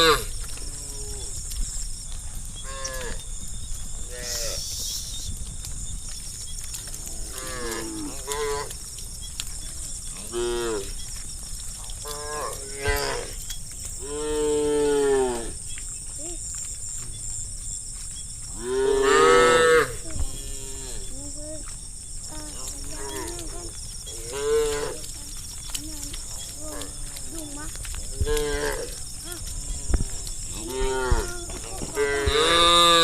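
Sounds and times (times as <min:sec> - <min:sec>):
cows mooing: 0:18.6 - 0:21.1, 0:30.5 - 0:33.0.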